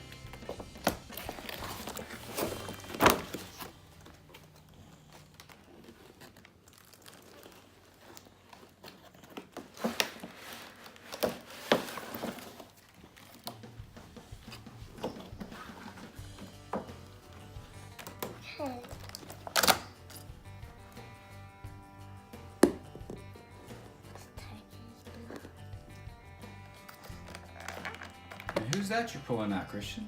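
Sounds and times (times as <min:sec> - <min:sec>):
plastic packaging crinkling: 0:01.0 - 0:13.5, 0:26.8 - 0:29.0.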